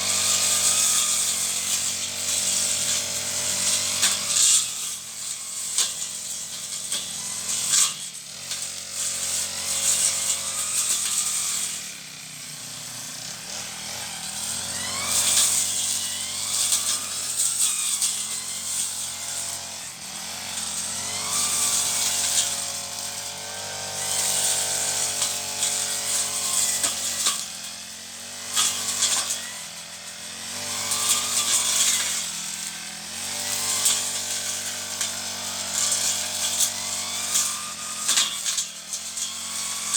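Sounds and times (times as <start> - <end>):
brush cutter engine revving: 0.0 - 39.9.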